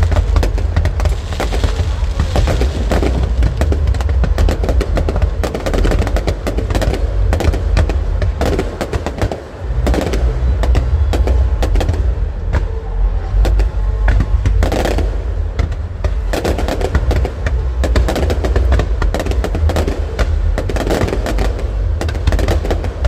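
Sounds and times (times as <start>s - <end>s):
deep booming rumble: 0.0s - 23.0s
fireworks bangs and crackles: 0.0s - 23.0s.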